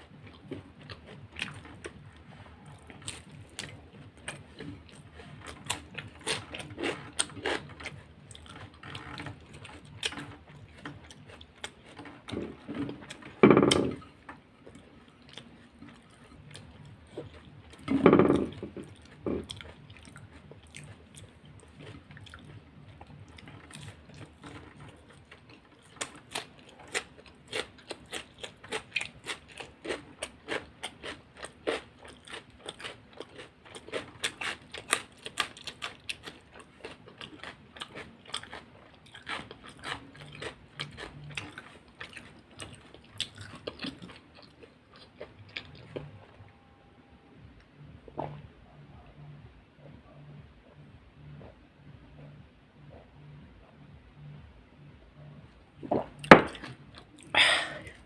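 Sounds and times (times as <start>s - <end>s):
person chewing crunchy food: 0.0s - 46.4s, 55.2s - 58.0s.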